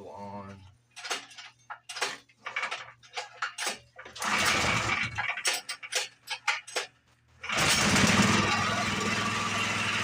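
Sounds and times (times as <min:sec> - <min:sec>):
recoil starter pull: 0:01.0 - 0:10.0
engine starting and running: 0:03.6 - 0:06.2, 0:07.4 - 0:10.0.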